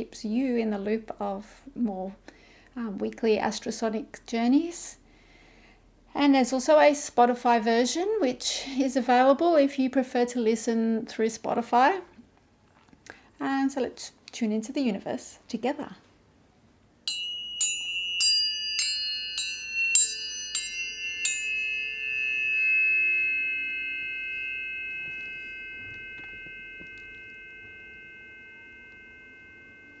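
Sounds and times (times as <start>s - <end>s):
tuning forks ringing: 17.1s - 30.0s.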